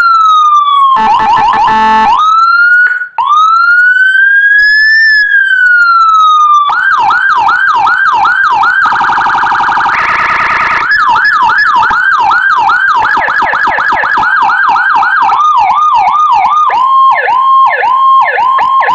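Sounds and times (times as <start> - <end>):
electronic siren wail and yelp: 0.0 - 18.9.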